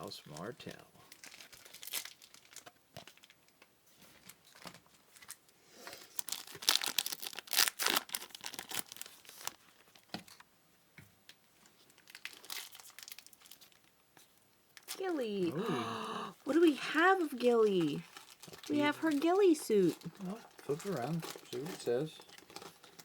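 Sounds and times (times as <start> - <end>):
foil wrapper crinkling and tearing: 1.1 - 10.4, 11.7 - 14.0, 16.6 - 23.0.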